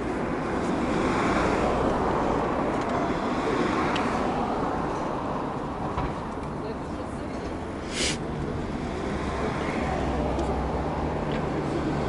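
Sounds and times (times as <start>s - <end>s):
road traffic rushing: 0.0s - 12.0s.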